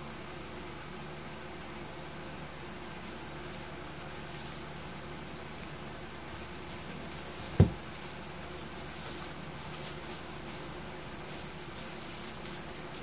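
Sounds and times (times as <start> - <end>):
faint hiss: 0.0 - 13.0
dull thump: 7.5 - 7.8.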